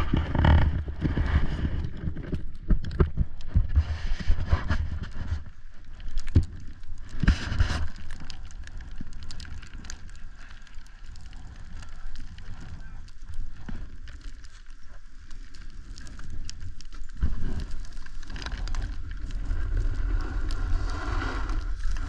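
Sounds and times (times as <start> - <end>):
snowboard scraping over snow: 0.0 - 1.9, 17.2 - 22.0
wind rumble on microphone: 0.0 - 22.0.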